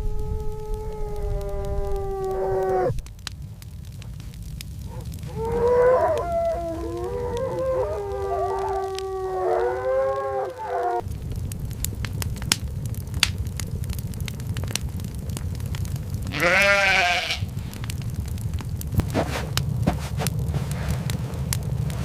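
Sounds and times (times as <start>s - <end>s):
steady low rumble: 0.0s - 8.2s, 11.0s - 22.0s
crackling ticks: 0.0s - 22.0s
livestock bleating: 16.3s - 17.5s.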